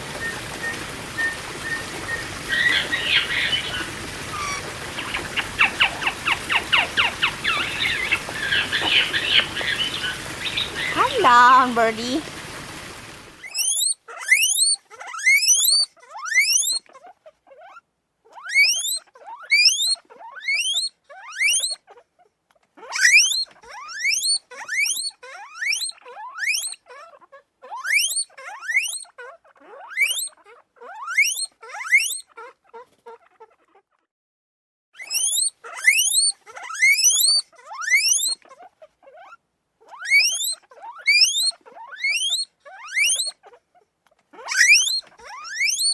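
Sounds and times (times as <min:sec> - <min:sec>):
animal squealing: 0:02.5 - 0:12.3, 0:22.8 - 0:33.8, 0:35.0 - 0:43.6, 0:44.4 - 0:45.9.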